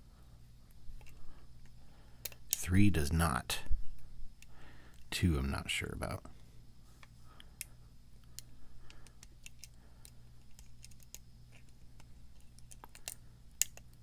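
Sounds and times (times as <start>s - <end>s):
low steady hum: 0.0s - 14.0s
lock pick clicking on pins: 8.3s - 14.0s.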